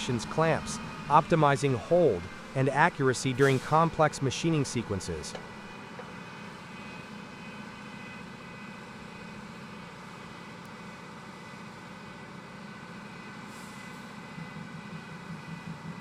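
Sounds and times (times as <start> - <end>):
cnc machine humming: 0.0 - 10.5, 14.2 - 16.0
constant machine whining tones: 0.0 - 16.0.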